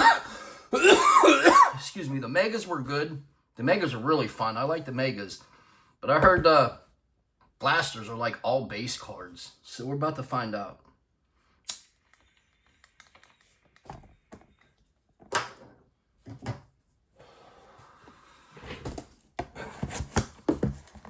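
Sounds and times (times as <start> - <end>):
packs rustling: 18.7 - 21.0
cardboard box taps and knocks: 18.8 - 21.0.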